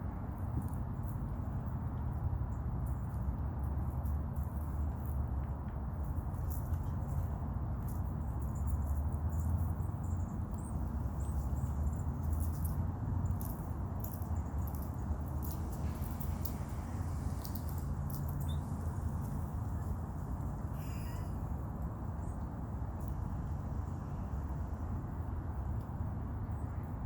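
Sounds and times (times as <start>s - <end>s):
squirrel nibbling a peanut shell: 10.4s - 19.9s.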